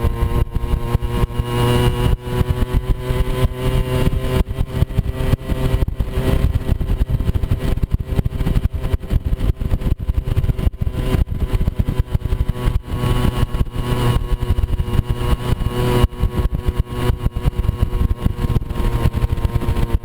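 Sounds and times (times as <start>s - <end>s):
scooter engine running: 0.0s - 20.0s
wind buffeting microphone: 0.0s - 20.0s.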